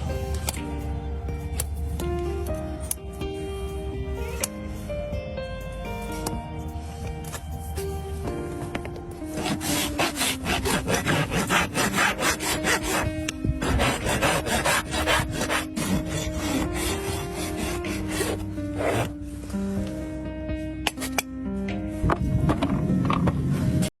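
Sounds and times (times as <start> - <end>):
rasp filing horse hoof: 9.3 - 19.2.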